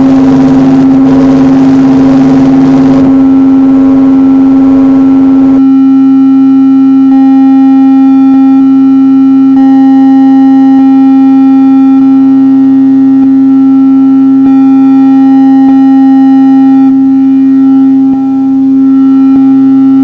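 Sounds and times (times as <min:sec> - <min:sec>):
synth drone: 0:00.0 - 0:06.0, 0:11.2 - 0:20.0.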